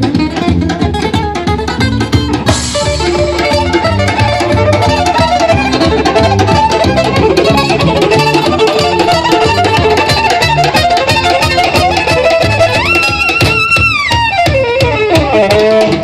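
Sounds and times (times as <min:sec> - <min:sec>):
bass line: 0:00.0 - 0:16.0
plucked acoustic guitar: 0:00.0 - 0:16.0
violin melody: 0:00.0 - 0:16.0
cymbal crash: 0:02.5 - 0:03.4.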